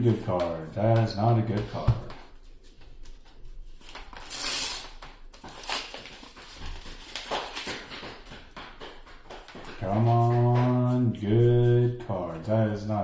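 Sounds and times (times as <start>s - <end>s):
card packs rustling and crinkling: 1.7s - 8.3s.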